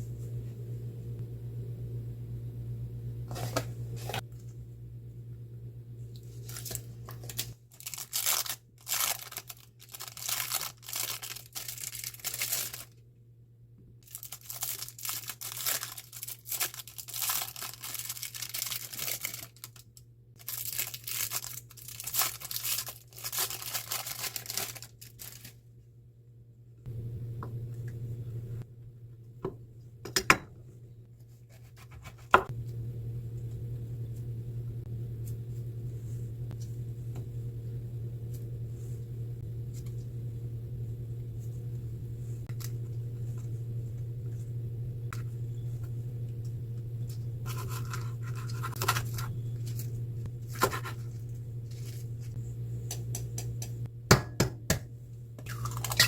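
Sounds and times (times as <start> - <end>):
steady low hum: 0.0 - 56.0
tearing and crinkling by hand: 6.2 - 13.0, 14.0 - 25.6, 47.4 - 52.3.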